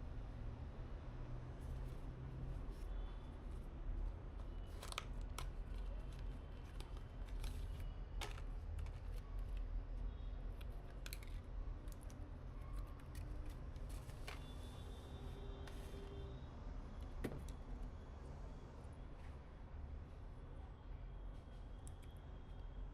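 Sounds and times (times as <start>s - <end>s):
small clicks and handling noises: 3.5s - 14.9s, 21.5s - 22.2s.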